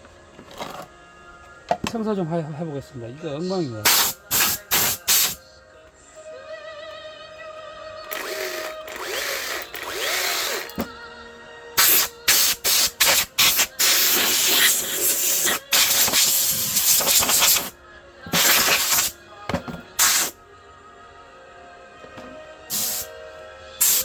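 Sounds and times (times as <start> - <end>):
background music: 0.0 - 24.0
compressed air hissing blasts: 3.8 - 5.4, 11.8 - 19.2, 20.0 - 20.4, 22.7 - 23.1, 23.8 - 24.0.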